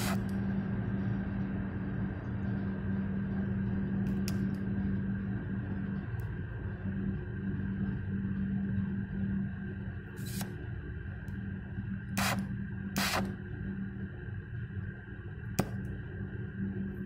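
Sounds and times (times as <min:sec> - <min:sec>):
gas hissing from torch: 0:00.0 - 0:00.3, 0:10.2 - 0:10.5, 0:12.2 - 0:13.3
steady low hum: 0:00.0 - 0:17.0.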